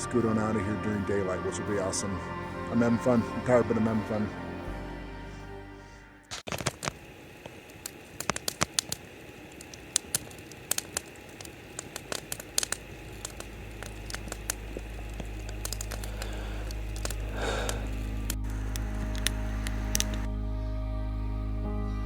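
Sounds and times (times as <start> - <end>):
background music: 0.0 - 6.4, 13.5 - 22.0
sharp crackles and clicks: 6.3 - 20.3.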